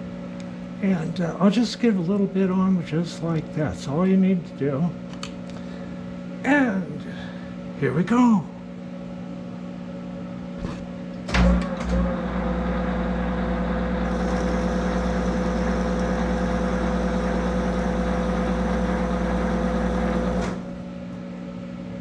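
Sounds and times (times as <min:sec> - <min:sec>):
low electrical hum: 0:00.0 - 0:22.0
lathe spindle whine: 0:11.9 - 0:20.6.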